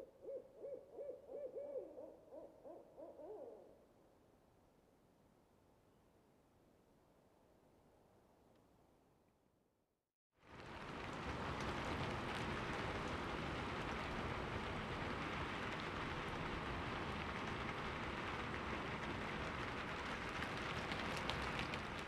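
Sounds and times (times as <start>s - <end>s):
steady rain falling: 10.4s - 22.0s.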